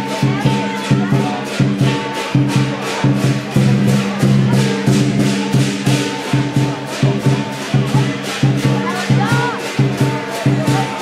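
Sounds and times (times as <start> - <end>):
loud percussion beating: 0.0 - 11.0.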